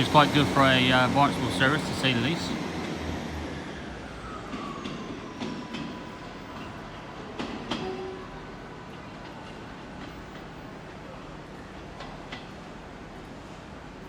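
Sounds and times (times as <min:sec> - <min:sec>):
train wheels squealing: 0:03.4 - 0:08.7
wheels clicking over rail joints: 0:04.5 - 0:14.0.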